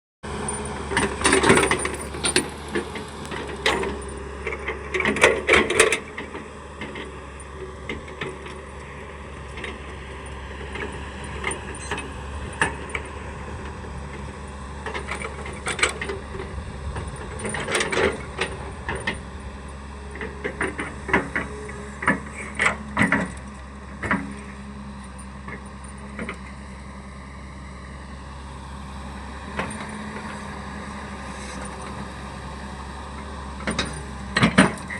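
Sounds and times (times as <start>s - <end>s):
excavator diesel engine running: 0.2s - 34.9s
metallic clanks and knocks: 0.9s - 7.1s.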